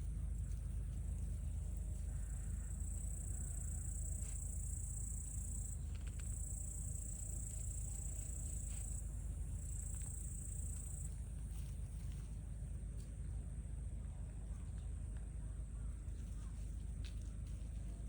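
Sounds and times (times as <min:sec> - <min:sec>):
low steady rumble: 0:00.0 - 0:18.0
insects trilling: 0:00.4 - 0:11.7.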